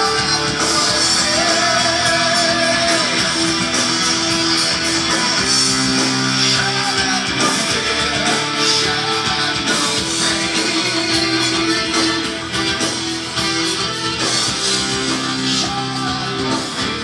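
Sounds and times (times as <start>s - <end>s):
heavy metal electric guitars: 0.0s - 17.0s.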